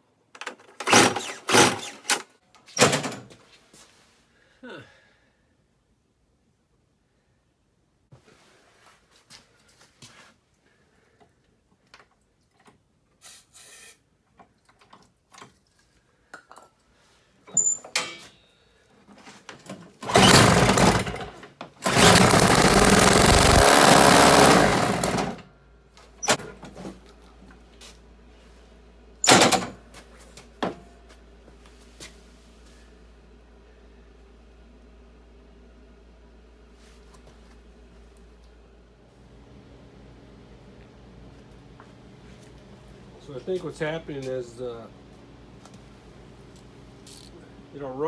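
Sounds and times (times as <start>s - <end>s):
engine pull-start: 0.4s - 2.3s, 20.0s - 25.4s, 29.2s - 29.8s
small two-stroke engine running: 20.1s - 25.4s, 46.1s - 47.8s.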